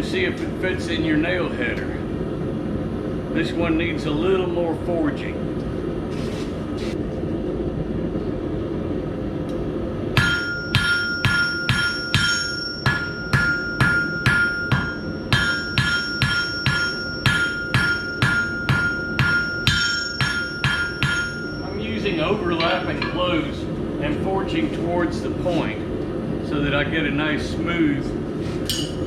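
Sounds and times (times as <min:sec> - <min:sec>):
hammer striking steel on anvil: 0:10.2 - 0:23.4, 0:28.7 - 0:29.0.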